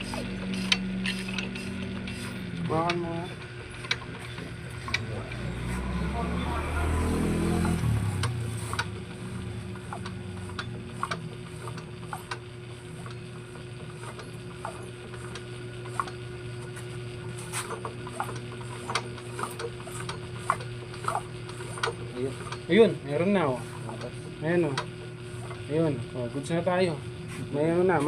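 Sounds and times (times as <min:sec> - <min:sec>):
metallic clicks and ratcheting: 0:00.0 - 0:03.0
steady low hum: 0:00.0 - 0:28.0.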